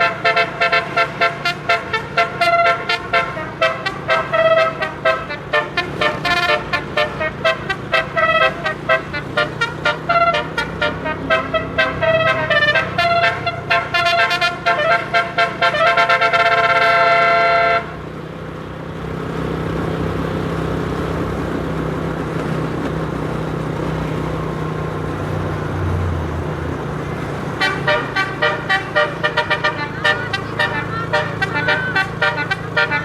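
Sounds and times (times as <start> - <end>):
multi-tone air horn melody: 0.0 - 18.1, 27.1 - 33.0
bus engine and road noise: 0.0 - 33.0.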